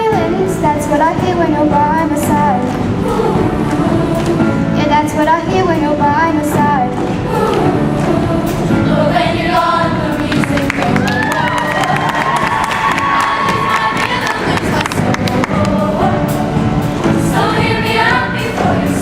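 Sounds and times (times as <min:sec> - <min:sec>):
instrumental accompaniment: 0:00.0 - 0:19.0
group of voices singing: 0:01.8 - 0:04.8, 0:06.7 - 0:19.0
audience cheering and clapping: 0:10.4 - 0:15.8.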